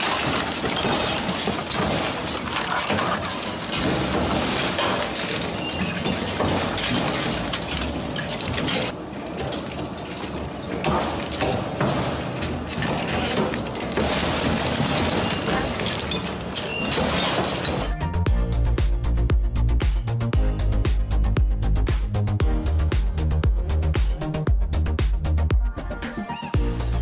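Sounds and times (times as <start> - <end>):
shredder crushing hard objects: 0.0 - 8.9, 10.8 - 17.6.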